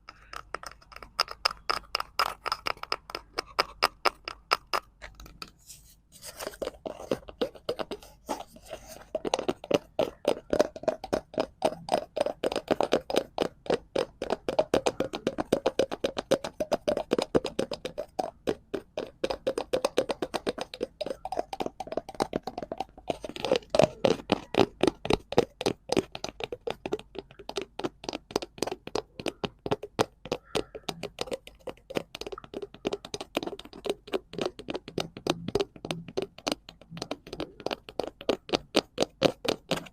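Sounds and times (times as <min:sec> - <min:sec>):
fingertips tapping on cardboard: 0:00.0 - 0:39.9.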